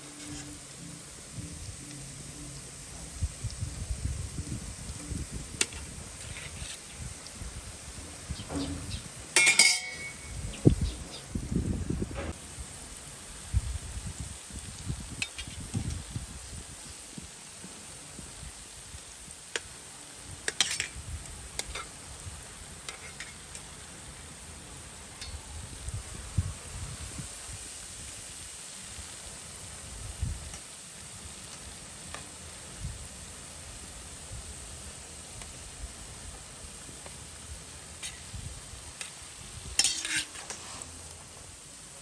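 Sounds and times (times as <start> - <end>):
spoon clinking and scraping pan: 0.0 - 0.9, 9.4 - 10.4, 20.5 - 21.0, 22.8 - 23.4, 39.8 - 41.0
dough frying in hot oil: 0.0 - 42.0.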